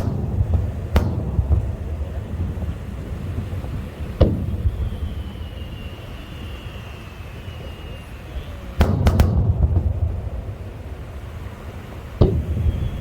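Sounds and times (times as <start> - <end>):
low rumble: 0.0 - 5.8, 8.8 - 13.0
fireworks bangs: 0.0 - 13.0
falling high whistle: 4.0 - 10.6, 12.2 - 13.0.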